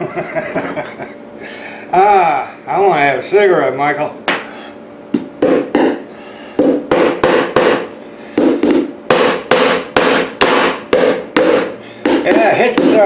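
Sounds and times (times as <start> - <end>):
hammer driving nails into wood: 6.6 - 13.0.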